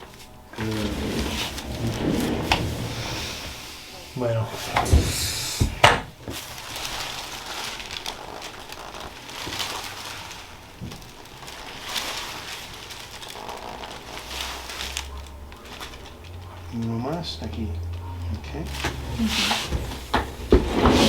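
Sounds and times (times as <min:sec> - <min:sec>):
crackling rustle: 0:00.0 - 0:21.0
joints cracking: 0:04.7 - 0:21.0.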